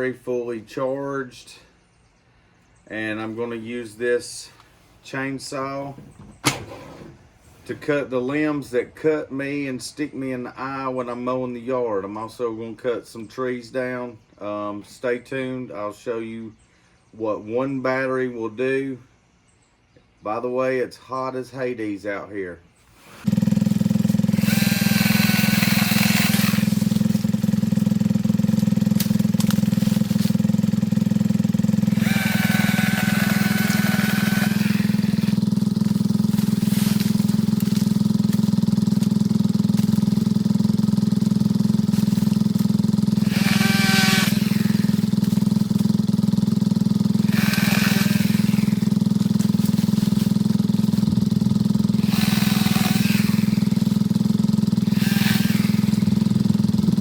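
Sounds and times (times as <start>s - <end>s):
chainsaw cutting limbs: 23.0s - 57.0s
cordless chainsaw running: 23.2s - 57.0s.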